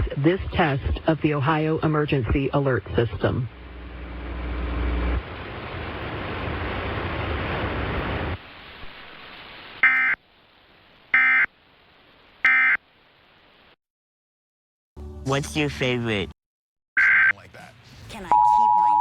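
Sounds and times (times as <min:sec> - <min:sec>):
steady hiss: 0:03.7 - 0:13.8.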